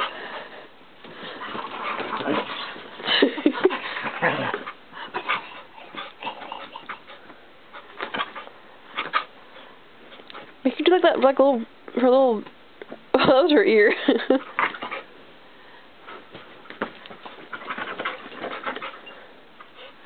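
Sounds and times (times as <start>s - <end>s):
dog making excited sounds: 16.1s - 19.1s.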